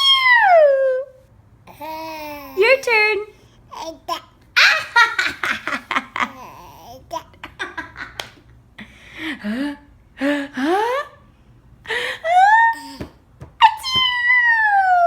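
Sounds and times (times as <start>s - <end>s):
child laughing and giggling: 3.8s - 8.3s.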